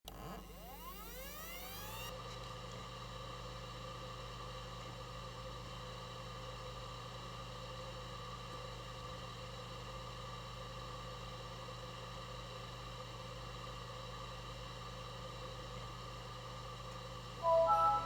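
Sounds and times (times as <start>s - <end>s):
machine hum and whir: 0.1s - 2.2s.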